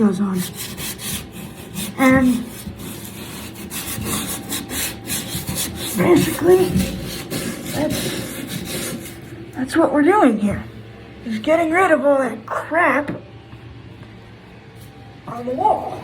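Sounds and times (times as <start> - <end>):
hand sanding drywall: 0.0 - 9.3.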